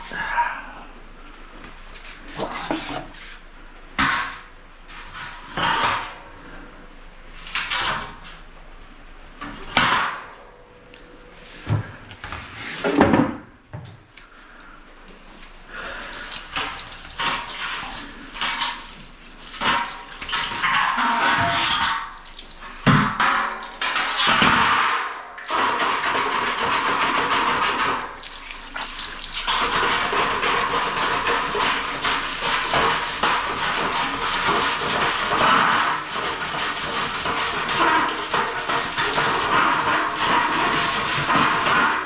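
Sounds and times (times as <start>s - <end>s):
machine parts knocking and scraping: 16.1s - 42.0s.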